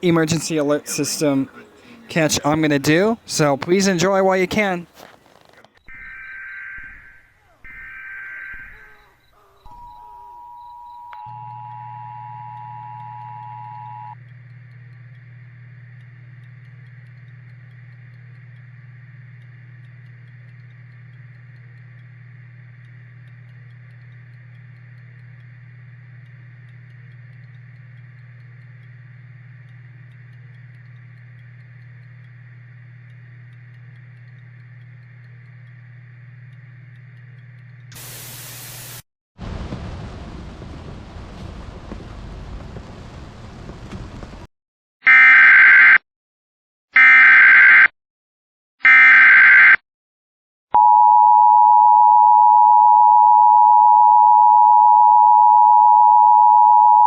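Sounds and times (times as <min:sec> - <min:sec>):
two-tone alert signal: 0:05.9 - 0:14.2
loud static: 0:37.6 - 0:44.5.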